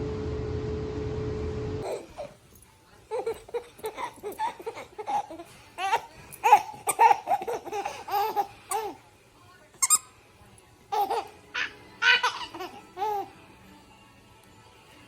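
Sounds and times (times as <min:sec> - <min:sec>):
baby laughing: 0:01.8 - 0:02.4, 0:03.1 - 0:09.0, 0:10.9 - 0:13.4.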